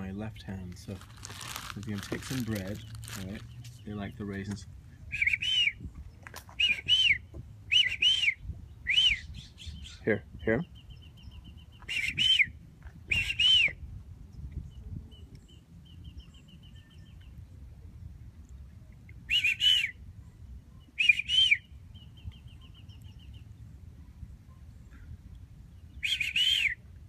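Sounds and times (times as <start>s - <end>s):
bird calling: 19.3s - 20.0s, 20.8s - 23.2s, 26.0s - 26.8s.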